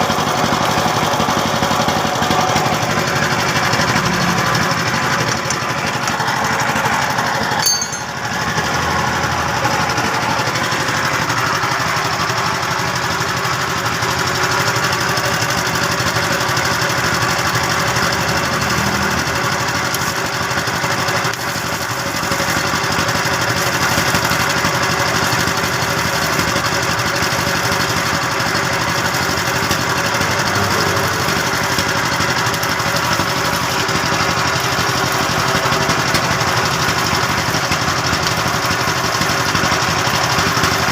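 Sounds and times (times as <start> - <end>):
welding arc crackling and sizzling: 17.1 - 26.6.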